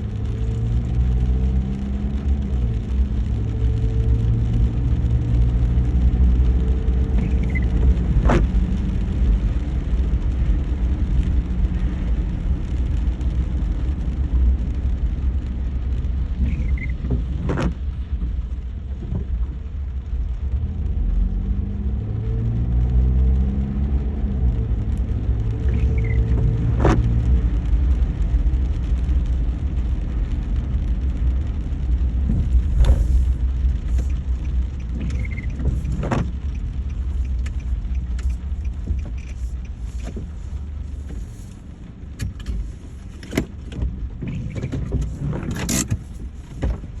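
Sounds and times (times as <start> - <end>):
car engine and road rumble: 0.0 - 47.0.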